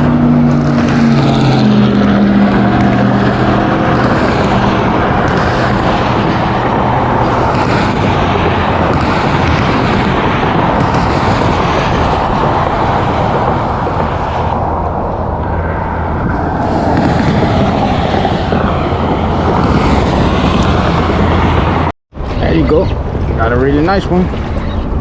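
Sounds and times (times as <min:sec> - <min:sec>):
wind noise on microphone: 0:00.0 - 0:25.0.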